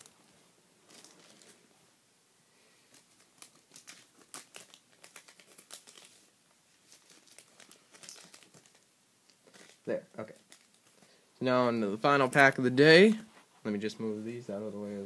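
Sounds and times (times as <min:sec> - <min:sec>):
plastic wrappers crinkling: 0:00.8 - 0:01.6, 0:02.8 - 0:11.1.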